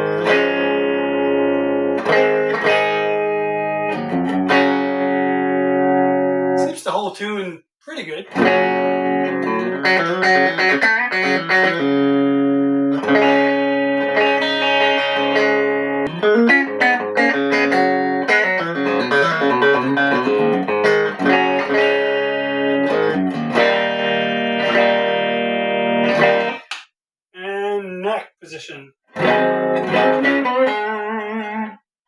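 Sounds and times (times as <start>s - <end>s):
electric guitar through amp: 8.4s - 26.6s, 29.2s - 31.7s.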